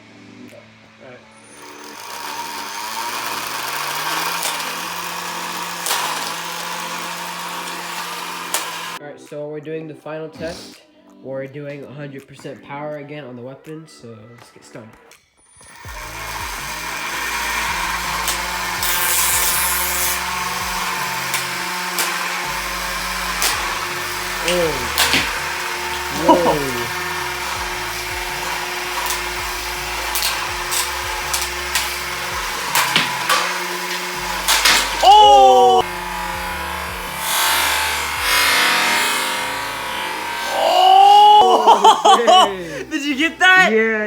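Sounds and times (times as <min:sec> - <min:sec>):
robot spinning weapon humming: 0:15.8 - 0:41.7.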